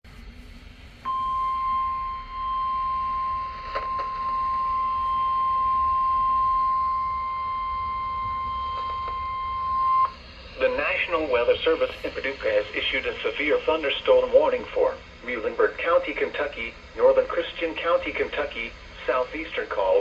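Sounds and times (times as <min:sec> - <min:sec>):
steady warning alarm tone: 0:00.4 - 0:14.7.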